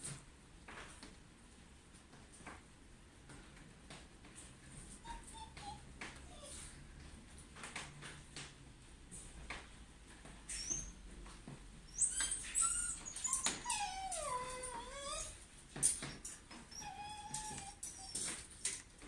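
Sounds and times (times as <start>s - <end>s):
dog whining: 5.0s - 6.8s, 10.5s - 11.0s, 11.9s - 15.4s, 16.0s - 18.8s.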